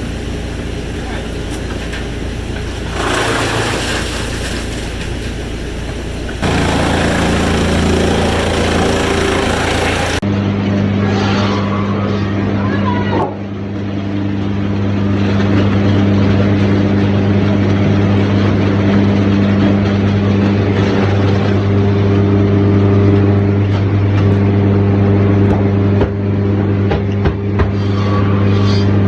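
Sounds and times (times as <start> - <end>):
sawmill machinery humming: 0.0 - 10.5.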